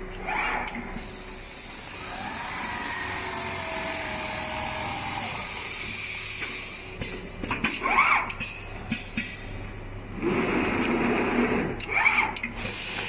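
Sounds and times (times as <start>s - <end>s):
sewing machine hissing: 1.0s - 6.9s.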